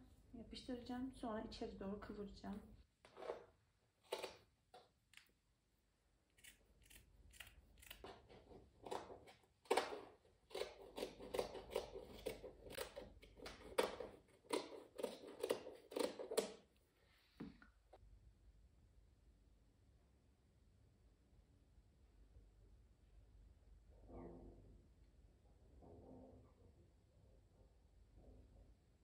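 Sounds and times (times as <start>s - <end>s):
scissors snipping fabric: 6.3s - 16.6s.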